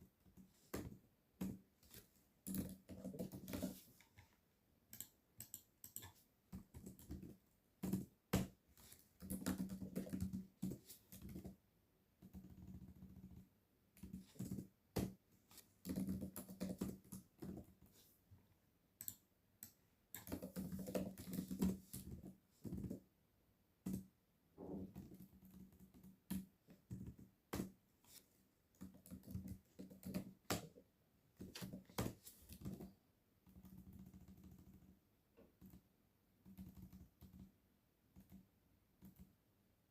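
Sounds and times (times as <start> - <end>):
typing on a keyboard: 2.4 - 3.8, 9.2 - 11.6, 15.8 - 17.7, 19.0 - 23.0, 28.8 - 30.4.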